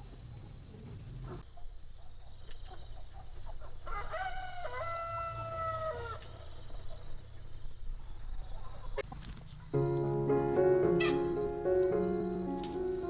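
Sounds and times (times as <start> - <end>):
rooster crowing: 3.8 - 6.3.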